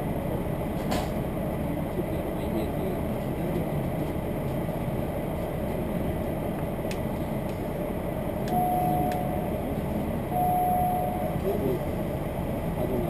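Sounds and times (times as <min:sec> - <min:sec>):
railcar rumble: 0:00.0 - 0:13.0
short high tones: 0:08.5 - 0:09.6, 0:10.3 - 0:11.4.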